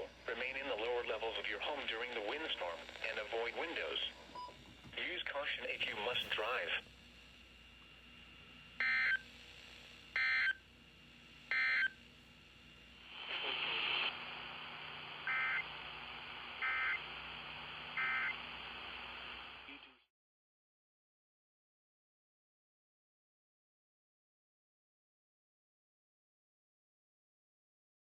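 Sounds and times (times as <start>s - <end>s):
static hiss: 0.0s - 7.6s, 12.0s - 19.8s.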